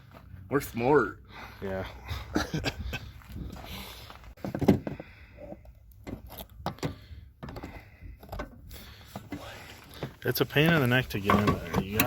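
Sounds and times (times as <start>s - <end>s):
tools knocking and clunking: 4.4s - 5.1s, 11.2s - 12.0s.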